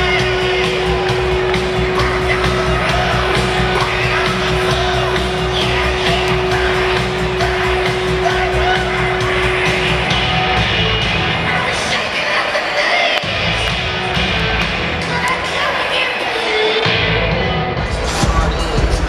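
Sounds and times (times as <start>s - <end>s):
music with low beat: 0.0s - 11.5s
crowd noise: 0.0s - 19.0s.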